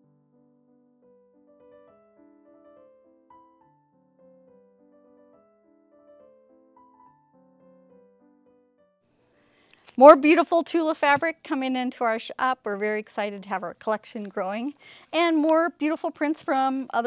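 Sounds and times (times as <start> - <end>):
gentle piano playing: 0.0 - 9.6.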